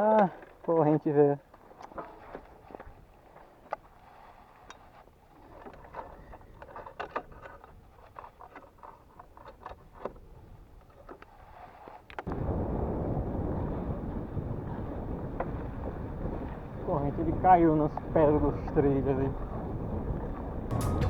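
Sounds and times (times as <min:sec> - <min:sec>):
wind on microphone: 0:12.3 - 0:21.0.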